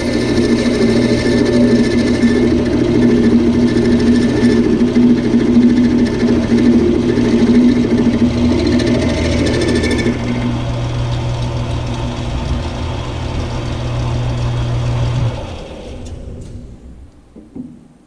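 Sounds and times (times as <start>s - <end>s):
lathe cutting chatter: 0.0s - 16.2s
lathe winding down: 0.0s - 17.1s
lathe motor hum: 0.0s - 17.2s.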